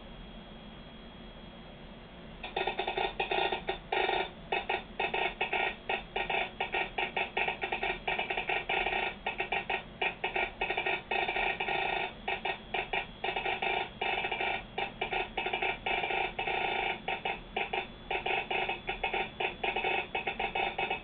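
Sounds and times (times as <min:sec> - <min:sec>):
morse code on telegraph key: 0:02.4 - 0:21.0.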